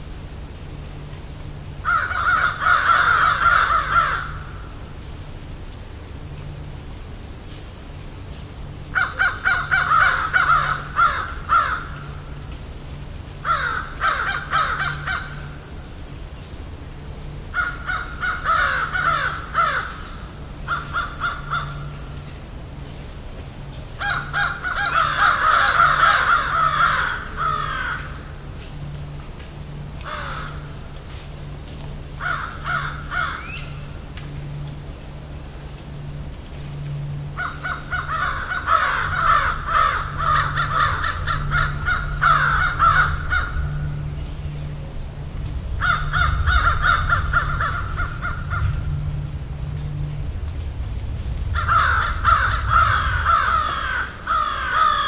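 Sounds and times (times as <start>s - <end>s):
low steady hum: 0.0s - 55.0s
crows cawing: 1.8s - 4.7s, 8.9s - 12.4s, 13.4s - 15.7s, 17.6s - 22.1s, 24.0s - 28.4s, 30.0s - 30.8s, 32.2s - 33.8s, 37.4s - 44.1s, 45.8s - 49.0s, 51.6s - 55.0s
high hiss: 3.8s - 55.0s.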